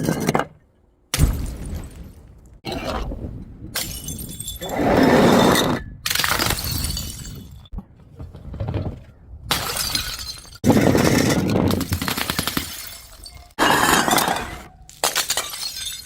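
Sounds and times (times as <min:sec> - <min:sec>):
glass bottles smashing: 0:03.8 - 0:04.7, 0:06.1 - 0:07.7, 0:09.5 - 0:10.8, 0:11.9 - 0:16.0.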